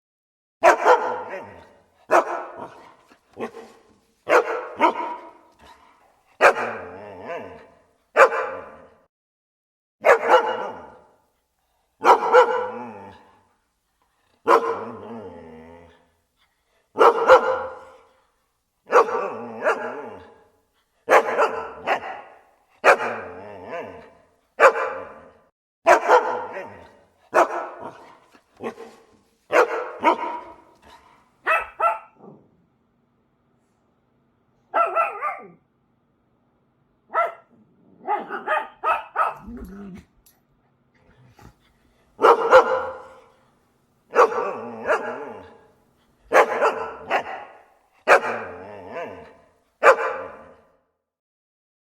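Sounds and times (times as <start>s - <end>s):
dogs barking: 0.6s - 5.8s, 6.4s - 7.6s, 8.2s - 8.9s, 10.0s - 11.2s, 12.0s - 13.0s, 14.4s - 15.1s, 17.0s - 18.1s, 18.9s - 20.4s, 21.1s - 24.0s, 24.6s - 25.3s, 25.9s - 30.8s, 31.4s - 32.2s, 34.7s - 35.6s, 37.1s - 39.6s, 42.2s - 43.3s, 44.1s - 45.6s, 46.3s - 50.6s.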